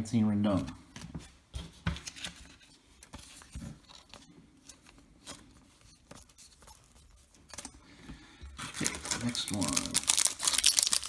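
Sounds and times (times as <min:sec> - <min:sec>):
trading cards clicking and rustling: 0:08.6 - 0:11.0.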